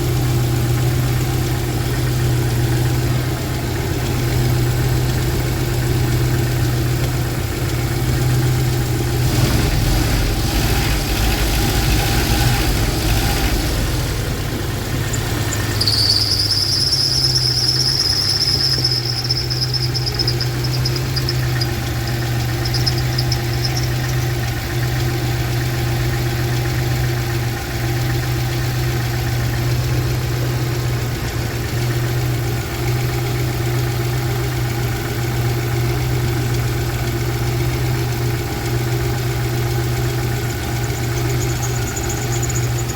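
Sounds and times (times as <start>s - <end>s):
engine idling: 0.0s - 42.9s
high-pitched belt whistle: 15.6s - 21.7s, 40.8s - 42.9s.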